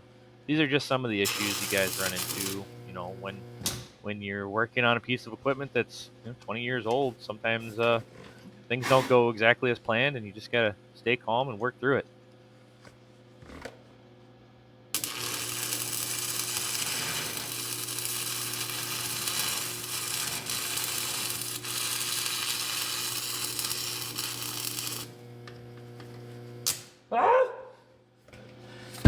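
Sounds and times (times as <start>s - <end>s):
steady low hum: 0.0s - 13.3s
welding arc crackling: 1.2s - 3.7s, 15.0s - 26.9s.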